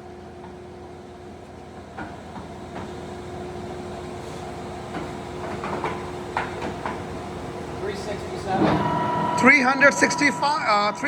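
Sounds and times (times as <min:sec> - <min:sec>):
lathe spindle humming: 0:08.6 - 0:11.0.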